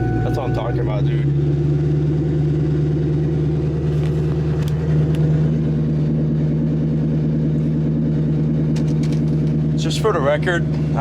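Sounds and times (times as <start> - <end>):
loud low exhaust drone: 0.0 - 11.0.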